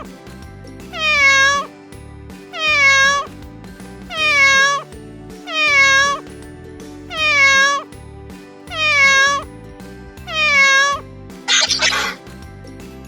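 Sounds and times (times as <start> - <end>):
background music: 0.0 - 13.0
cat meowing: 0.9 - 1.7, 2.5 - 3.3, 4.1 - 6.3, 7.1 - 7.9, 8.7 - 9.5, 10.3 - 12.2.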